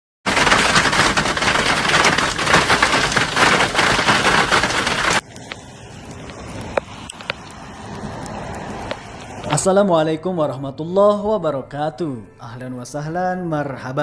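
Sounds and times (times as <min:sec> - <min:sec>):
hail pelting a hard surface: 0:00.3 - 0:05.2.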